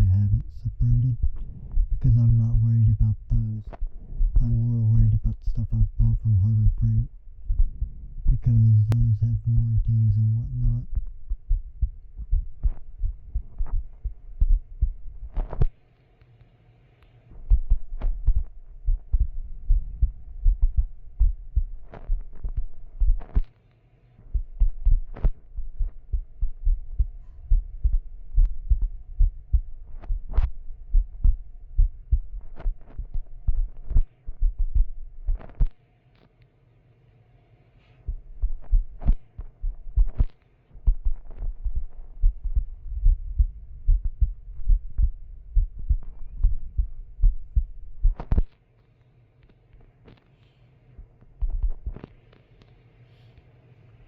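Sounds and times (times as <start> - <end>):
faint steady hum: 0.0 - 54.0
dull low thuds and knocks: 7.4 - 8.4, 10.8 - 15.7, 17.4 - 23.5, 24.3 - 35.7, 38.1 - 48.5, 51.0 - 52.0.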